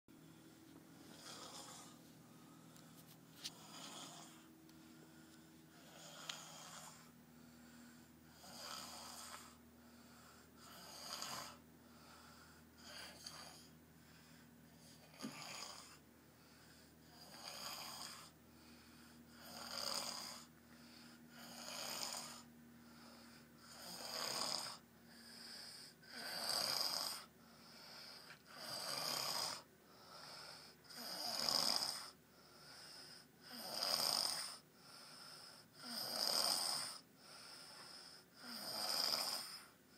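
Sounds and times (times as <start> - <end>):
person snoring: 1.0 - 2.8, 3.4 - 13.8, 14.7 - 39.8.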